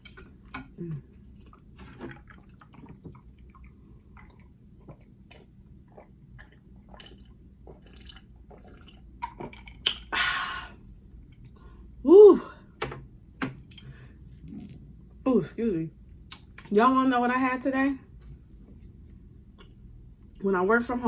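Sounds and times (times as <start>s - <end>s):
person chewing food: 0.0s - 10.1s.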